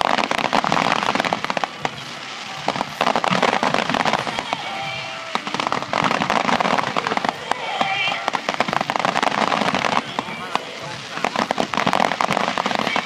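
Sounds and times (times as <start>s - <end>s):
fireworks bursting and crackling: 0.0s - 13.0s.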